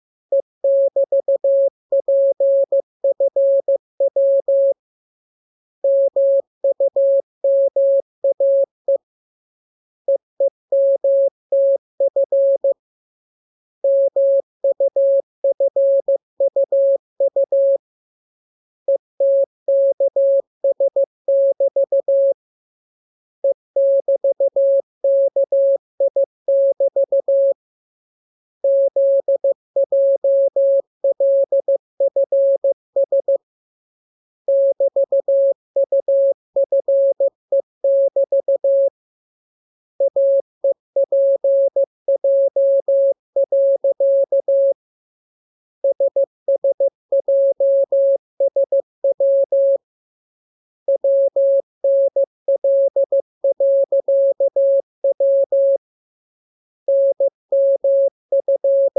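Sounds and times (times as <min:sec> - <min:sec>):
morse code tone: 0:56.9 - 0:58.9.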